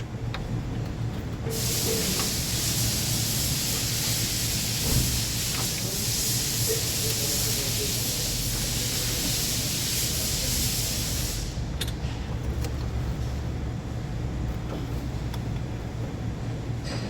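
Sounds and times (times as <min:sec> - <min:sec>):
spray hiss: 0:01.5 - 0:11.6.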